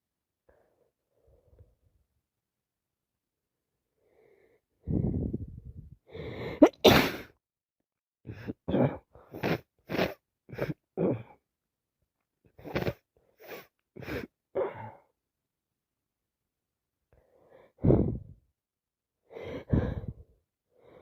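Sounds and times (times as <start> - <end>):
woman sneezing: 6.6 - 7.3
sharp nasal bursts: 9.4 - 10.2.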